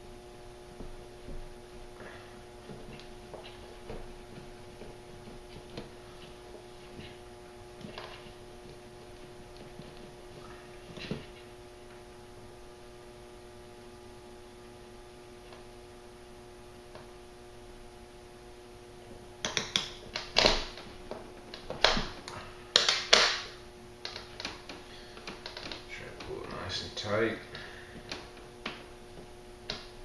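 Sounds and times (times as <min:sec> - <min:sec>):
steady low hum: 0:00.0 - 0:30.0
cord rustling and snapping: 0:07.8 - 0:11.4, 0:19.4 - 0:26.6.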